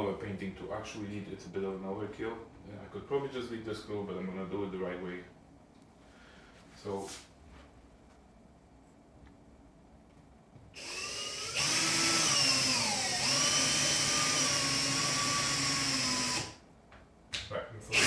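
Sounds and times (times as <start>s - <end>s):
power drill driving screw: 10.8s - 16.6s.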